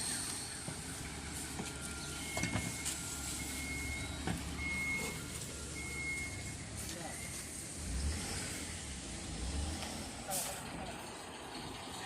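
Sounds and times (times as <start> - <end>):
reversing alarm beeping: 0.0 - 7.6.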